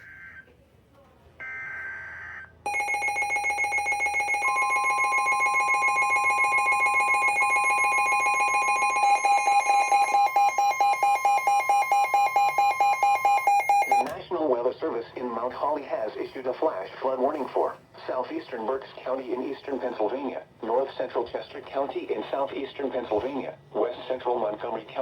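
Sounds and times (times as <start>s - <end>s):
rapidly pulsing electronic beep: 1.4s - 14.1s
steady alarm tone: 1.4s - 14.1s.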